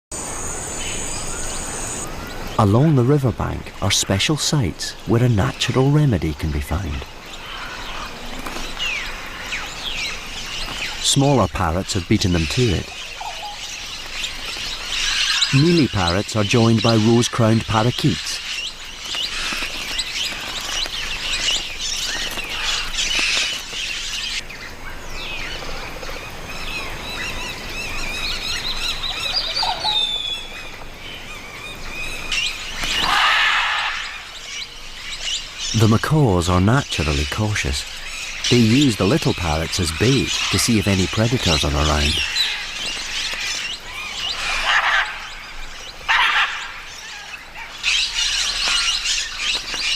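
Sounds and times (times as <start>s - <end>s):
parrots calling: 4.9s - 23.6s, 27.8s - 49.9s
parrots screeching: 32.8s - 34.4s, 41.4s - 45.4s, 46.1s - 49.3s.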